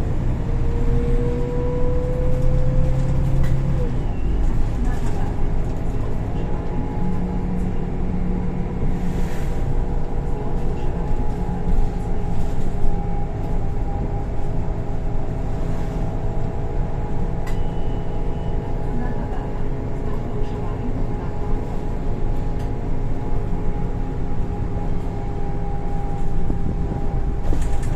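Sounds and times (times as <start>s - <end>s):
bus engine drone: 0.0s - 27.9s
road noise: 0.0s - 27.9s
click: 17.4s - 17.7s.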